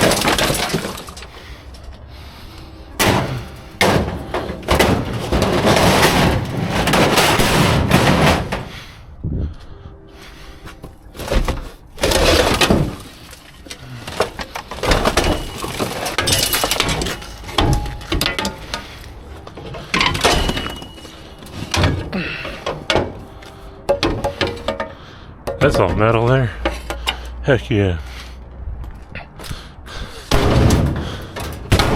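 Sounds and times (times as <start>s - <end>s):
scrap metal crashing: 0.0s - 1.7s, 3.0s - 8.9s, 11.1s - 27.3s, 30.3s - 31.9s.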